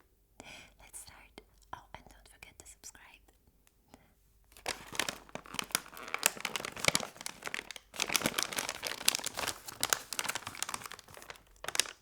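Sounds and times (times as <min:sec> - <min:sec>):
packaging crinkling and rustling: 0:04.5 - 0:12.0.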